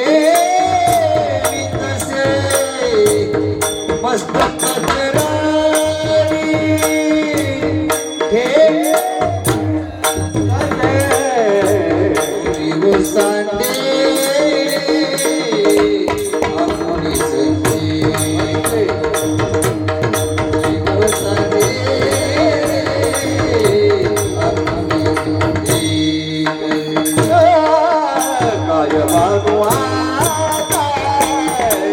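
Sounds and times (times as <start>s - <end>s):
jingling hand percussion: 0.0s - 31.9s
person singing devotional melody: 0.0s - 31.9s
tabla: 0.0s - 31.9s.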